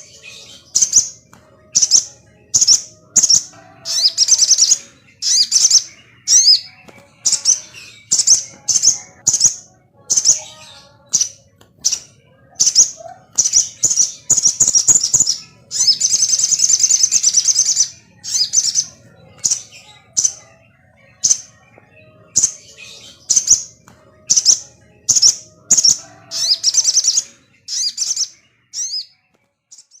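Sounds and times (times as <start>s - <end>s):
bird twittering trill: 0.0s - 30.0s
bird singing sharp high chirps: 1.8s - 20.4s.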